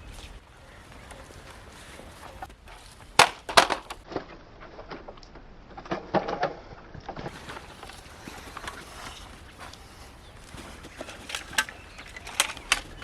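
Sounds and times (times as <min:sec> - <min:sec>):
sharp clicks and knocks: 0:02.4 - 0:09.8, 0:10.4 - 0:13.0.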